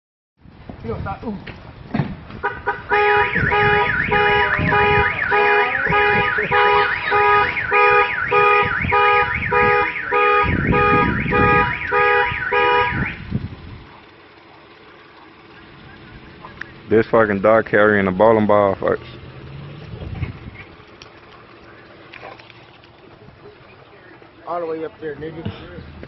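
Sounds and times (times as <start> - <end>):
electronic alarm warbling and beeping: 3.4 - 13.3.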